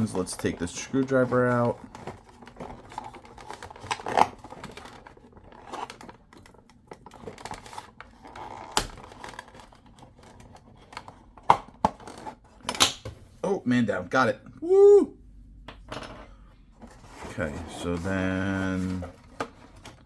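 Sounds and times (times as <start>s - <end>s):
plastic packaging rustling: 0.0s - 11.4s, 16.8s - 20.0s.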